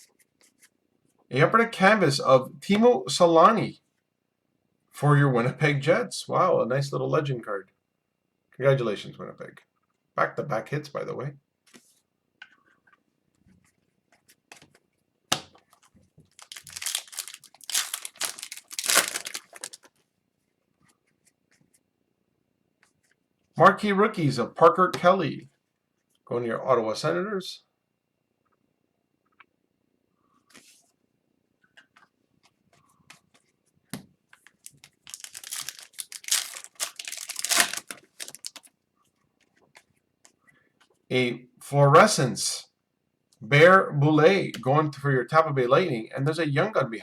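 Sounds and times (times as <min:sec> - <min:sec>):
foil wrapper crinkling: 0:16.3 - 0:19.9, 0:34.5 - 0:38.7
foil wrapper ripping: 0:16.3 - 0:19.9, 0:34.6 - 0:38.7.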